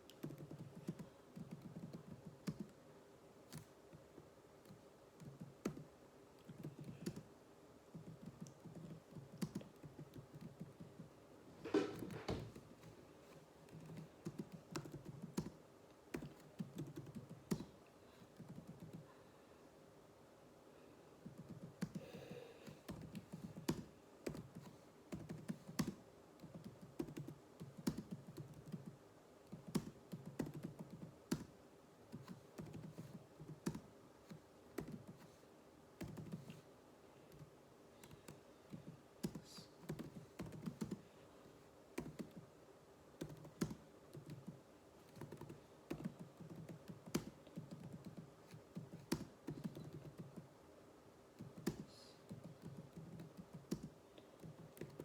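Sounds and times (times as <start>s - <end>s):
computer keyboard typing: 0.1s - 2.8s, 4.6s - 5.9s, 6.5s - 7.3s, 7.9s - 11.1s, 13.7s - 17.7s, 18.4s - 19.0s, 21.2s - 35.3s, 36.0s - 36.6s, 37.3s - 41.0s, 42.0s - 42.4s, 43.2s - 50.5s, 51.4s - 55.0s.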